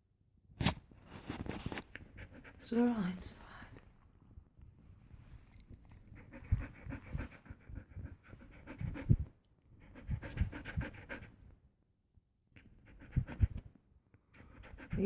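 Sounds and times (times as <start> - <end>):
dog panting rapidly: 2.1 - 3.0, 6.1 - 11.4, 12.8 - 13.6, 14.4 - 15.0.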